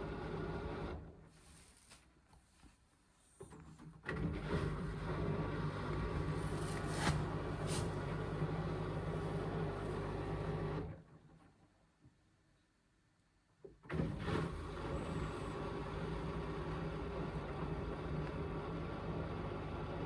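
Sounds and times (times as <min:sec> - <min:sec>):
washing machine motor humming: 0:14.0 - 0:20.0.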